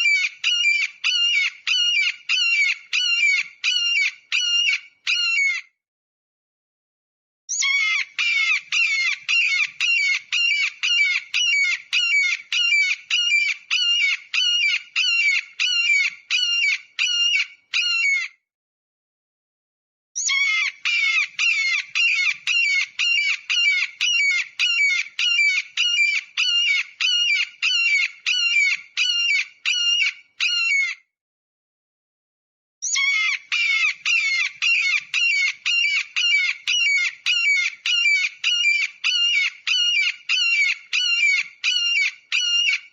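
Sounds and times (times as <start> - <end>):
eagle high piping calls: 0.0 - 5.6, 7.5 - 18.3, 20.2 - 31.0, 32.8 - 42.9.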